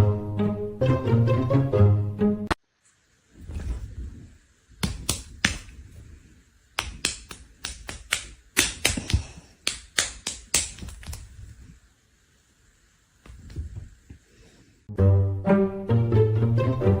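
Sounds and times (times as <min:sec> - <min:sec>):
sharp irregular taps: 0:04.8 - 0:05.8, 0:06.8 - 0:11.3
plucked string music: 0:14.9 - 0:17.0.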